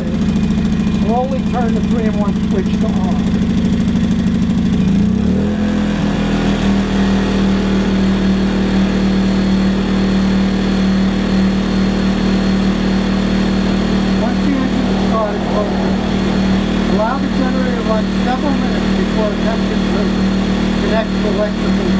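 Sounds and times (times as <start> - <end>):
generator engine running: 0.0 - 21.9.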